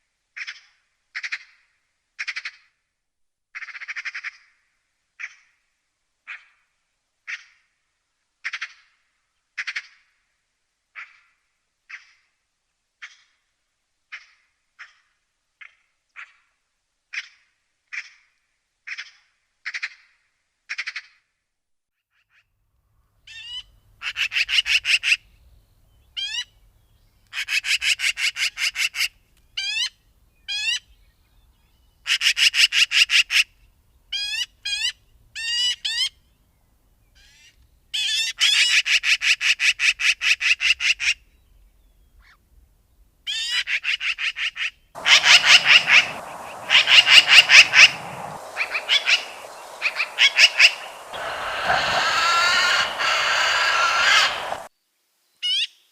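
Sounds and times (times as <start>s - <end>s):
magpie chattering: 45.0s - 54.7s
single rising bird calls: 45.0s - 54.7s
steady background hiss: 45.0s - 55.1s.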